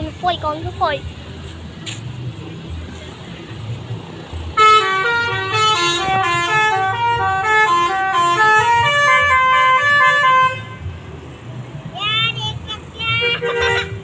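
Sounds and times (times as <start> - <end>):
low traffic rumble: 0.0 - 14.0
musical bus horn tune: 4.6 - 10.9, 13.2 - 14.0.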